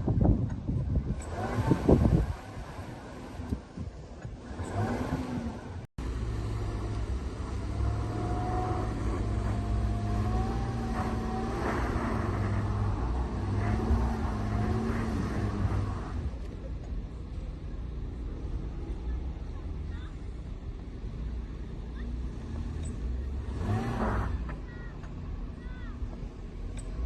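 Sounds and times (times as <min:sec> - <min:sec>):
car engine running under load: 0:00.0 - 0:27.0.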